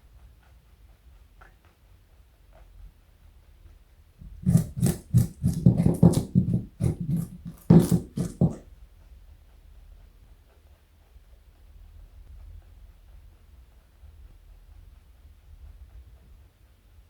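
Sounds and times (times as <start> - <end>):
rabbit crunching a carrot: 4.2 - 8.6.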